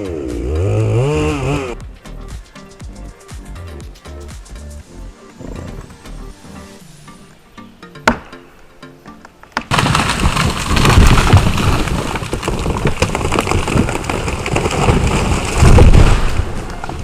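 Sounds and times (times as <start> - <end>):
tree crashing down: 9.6 - 17.0.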